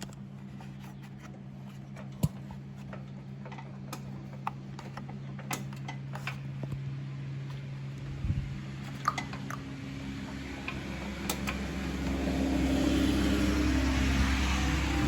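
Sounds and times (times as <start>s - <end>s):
small engine running: 9.0s - 15.0s.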